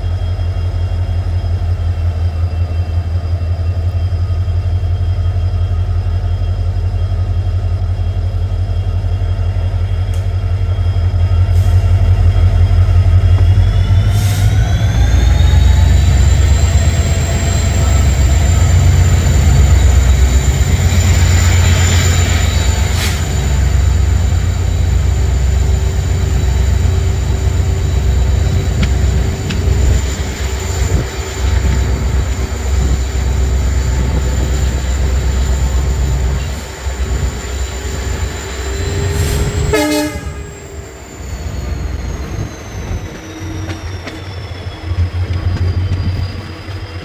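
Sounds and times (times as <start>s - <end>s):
locomotive engine rumble and whine: 0.0s - 47.0s
wheels on rail: 0.0s - 47.0s
train horn blast: 38.9s - 40.9s.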